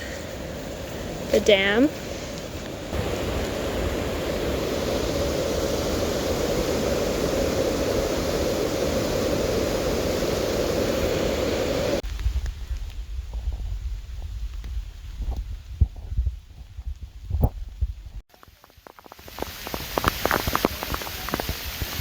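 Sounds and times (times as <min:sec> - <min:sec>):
water rushing over a dam: 0:02.9 - 0:12.0, 0:19.1 - 0:22.0
low rumble: 0:12.0 - 0:18.2.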